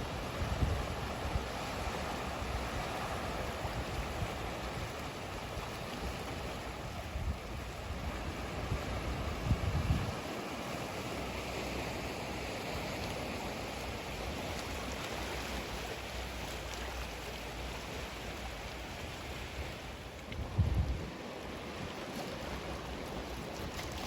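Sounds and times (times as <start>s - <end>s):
wind rumble on microphone: 0.0s - 10.7s, 17.8s - 24.0s
sea surf washing on shore: 0.0s - 24.0s.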